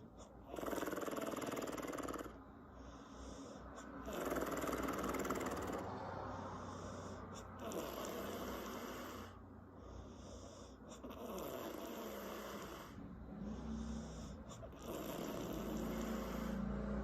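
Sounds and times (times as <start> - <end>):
woman snoring with lips flapping: 0.4 - 2.4, 3.9 - 6.0, 6.8 - 9.4, 10.9 - 17.0.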